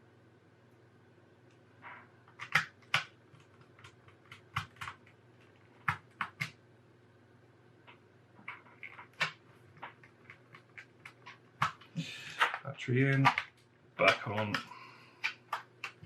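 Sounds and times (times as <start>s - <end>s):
faint low hum: 0.0s - 16.0s
small plastic clicks: 1.5s - 6.6s.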